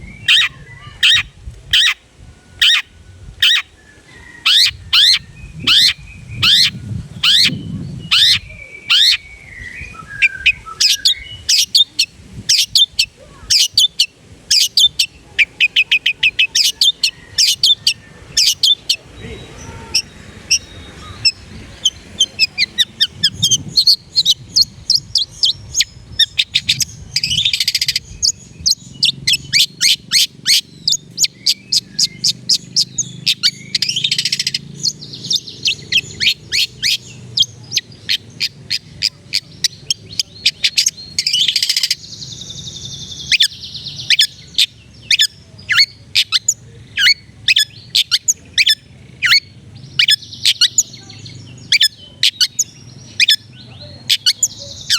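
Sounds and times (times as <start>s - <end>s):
bird harsh buzz: 0.2s - 9.3s, 10.1s - 42.0s.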